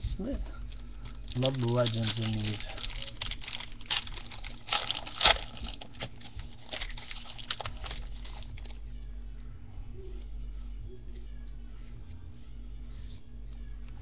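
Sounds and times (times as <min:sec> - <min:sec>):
trading cards rustling and snapping: 0:00.6 - 0:08.8.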